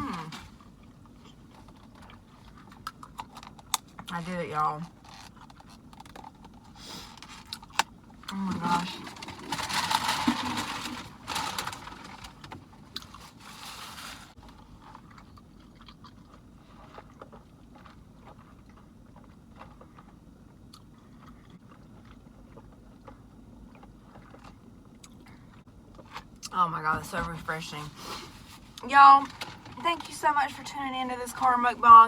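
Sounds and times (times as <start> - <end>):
food packaging crinkling: 8.6 - 18.6.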